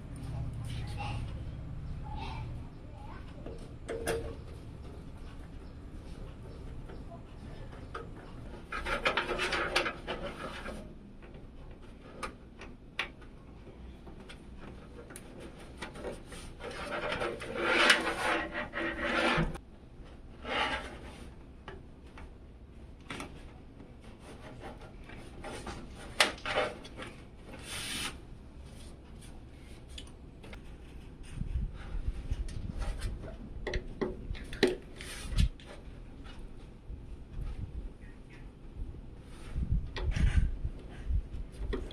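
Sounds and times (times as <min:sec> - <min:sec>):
computer parts rubbing and scraping: 0:04.2 - 0:11.0, 0:14.7 - 0:19.6, 0:20.3 - 0:21.5, 0:24.0 - 0:33.3.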